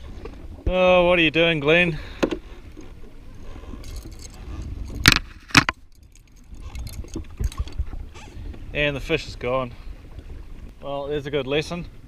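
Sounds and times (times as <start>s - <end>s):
wind and water rumble: 0.0s - 12.0s
light clicks and rattles: 3.8s - 7.8s.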